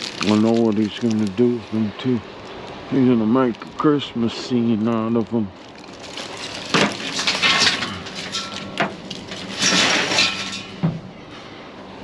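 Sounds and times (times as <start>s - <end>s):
plastic rustling and clattering: 0.0s - 2.7s, 4.8s - 11.1s.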